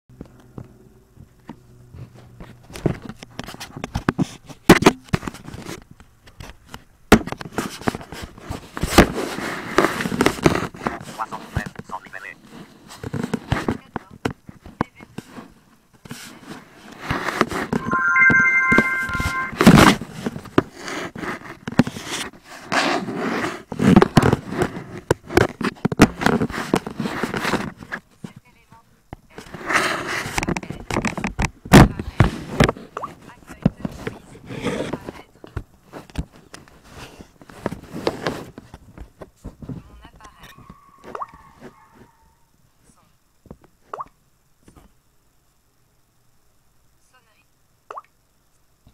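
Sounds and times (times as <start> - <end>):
scraping and rustling: 33.8 - 39.9.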